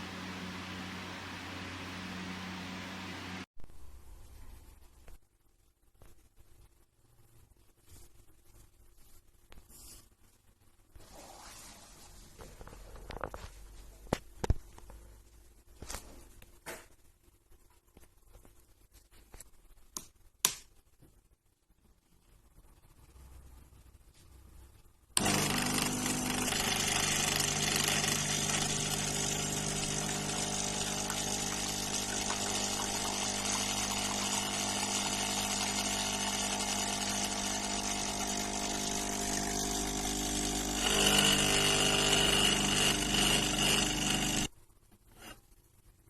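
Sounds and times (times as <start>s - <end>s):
espresso machine pump buzzing: 25.2s - 44.5s.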